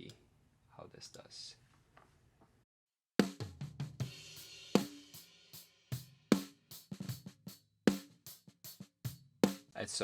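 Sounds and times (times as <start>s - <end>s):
drum kit groove: 3.2s - 10.0s.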